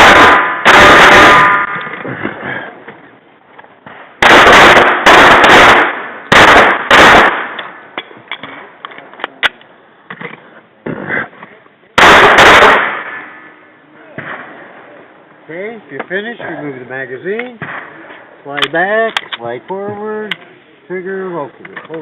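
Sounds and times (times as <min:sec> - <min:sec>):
pistol shots with echo: 0:00.0 - 0:01.8, 0:04.2 - 0:07.8, 0:12.0 - 0:13.4.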